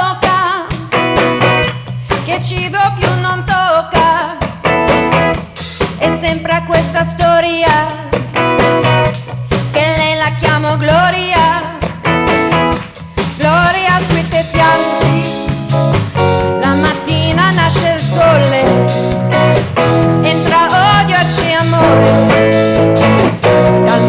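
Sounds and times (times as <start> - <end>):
band music: 0.0 - 24.0
person singing with vibrato: 13.4 - 15.7, 16.4 - 19.4, 20.1 - 22.8, 23.4 - 24.0.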